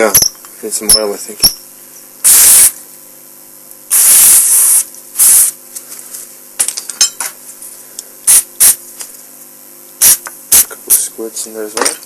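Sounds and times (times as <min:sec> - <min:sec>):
aerosol spray hissing: 0:03.9 - 0:05.6.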